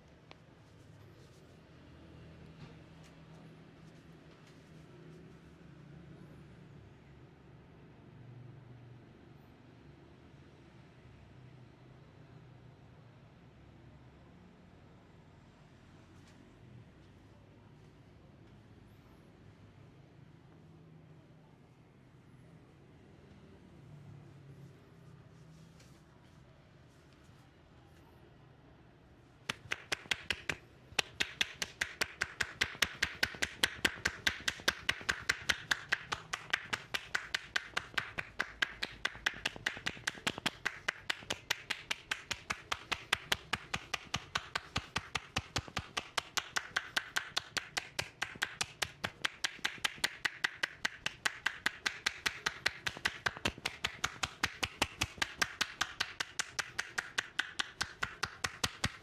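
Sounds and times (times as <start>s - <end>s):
percussive massage taps: 29.5s - 59.0s.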